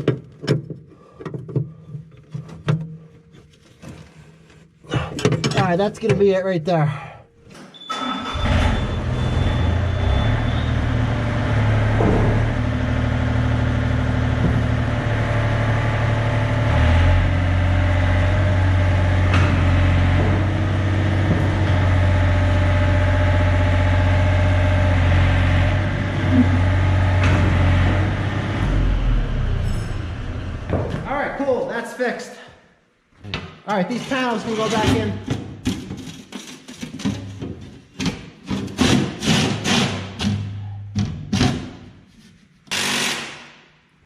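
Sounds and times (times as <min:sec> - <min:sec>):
diesel engine running: 0:08.3 - 0:30.8.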